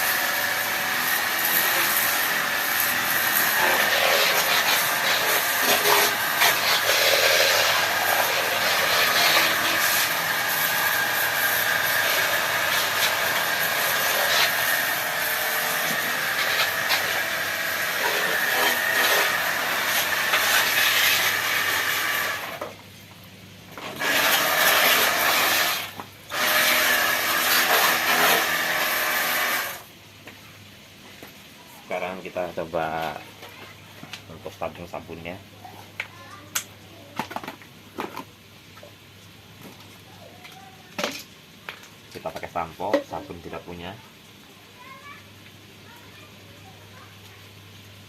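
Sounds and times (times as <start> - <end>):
water jet spraying: 0.0 - 22.6, 23.9 - 29.8
pressure washer pump hum: 0.0 - 29.9.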